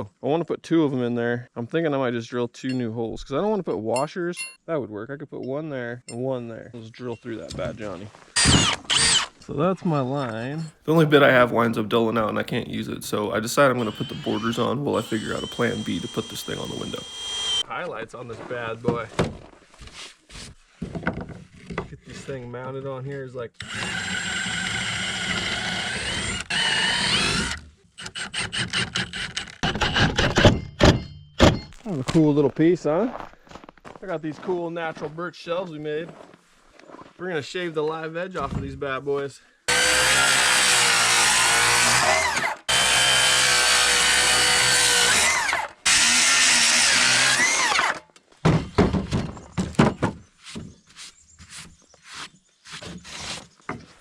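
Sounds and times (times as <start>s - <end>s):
power drill whine: 8.4s - 9.4s, 13.6s - 17.7s, 23.6s - 30.1s, 39.7s - 48.0s
wooden knocks and clatter: 18.8s - 19.6s, 20.8s - 22.0s, 48.4s - 50.8s.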